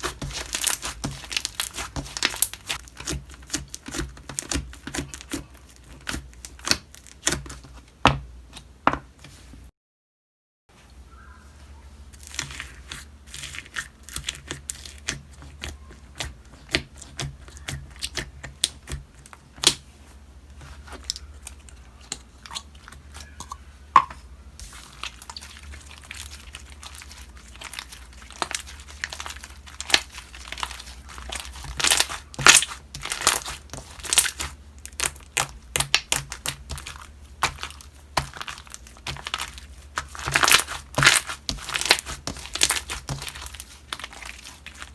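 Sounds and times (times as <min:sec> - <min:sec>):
slime squishing and popping: 0:00.0 - 0:07.6, 0:25.0 - 0:44.9.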